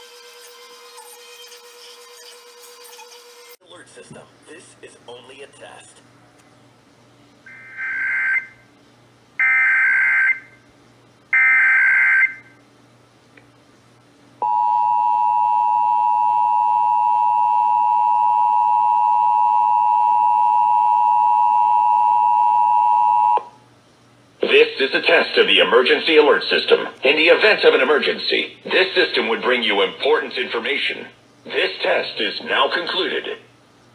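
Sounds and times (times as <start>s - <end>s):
two-tone attention signal: 7.5s - 8.6s.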